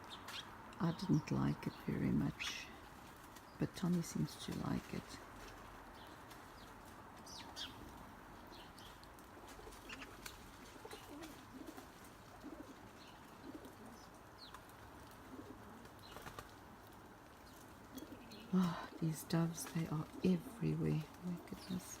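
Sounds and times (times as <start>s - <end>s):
small birds chirping: 0.0s - 22.0s
doves cooing softly: 0.2s - 22.0s.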